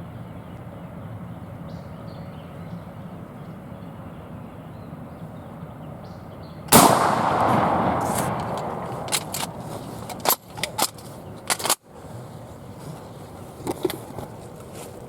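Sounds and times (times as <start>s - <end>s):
sudden loud rushing noise: 6.8s - 10.3s.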